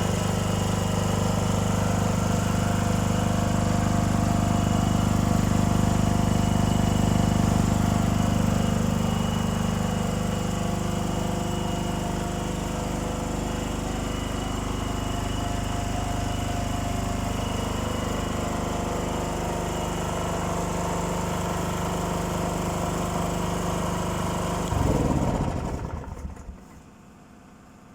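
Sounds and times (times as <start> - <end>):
generator engine running: 0.0 - 26.9.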